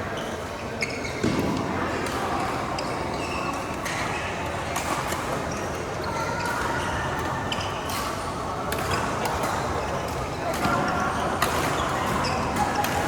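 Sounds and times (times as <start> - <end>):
shoes squeaking on court: 0.2 - 1.6.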